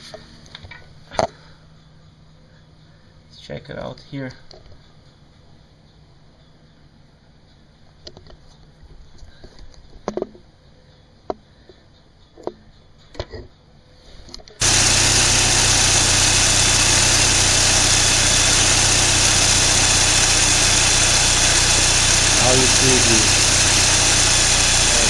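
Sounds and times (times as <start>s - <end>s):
car engine running: 14.6s - 25.0s.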